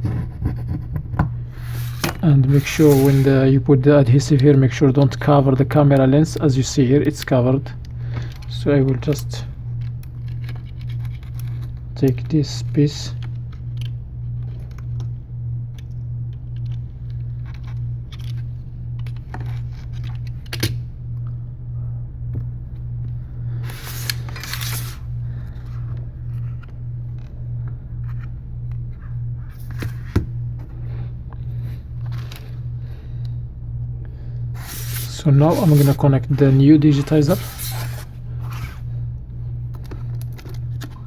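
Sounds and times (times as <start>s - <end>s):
scraping rustle: 1.6s - 3.4s, 23.7s - 25.1s, 34.6s - 38.8s
throbbing low hum: 12.6s - 35.5s.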